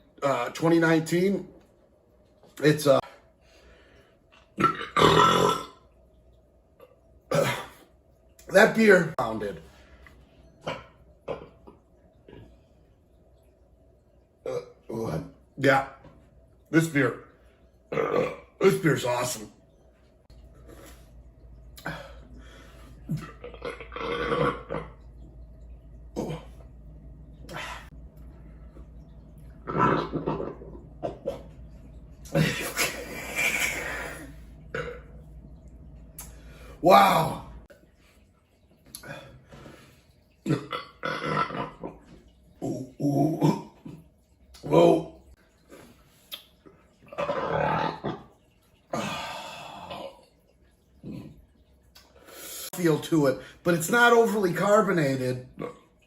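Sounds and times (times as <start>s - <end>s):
man burping: 4.6s - 5.8s, 7.3s - 7.8s, 10.6s - 11.7s, 14.4s - 14.9s, 17.9s - 18.6s, 21.8s - 22.2s, 23.1s - 25.0s, 26.2s - 26.6s, 32.2s - 35.1s, 40.4s - 41.9s, 42.6s - 44.0s, 47.1s - 48.3s, 48.9s - 50.2s.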